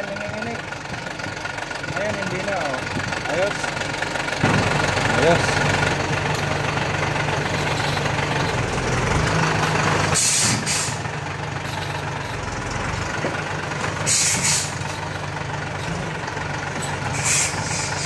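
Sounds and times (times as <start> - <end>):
diesel truck engine running: 0.0 - 18.0
air release hiss: 10.2 - 11.0, 14.1 - 14.7, 17.2 - 18.0.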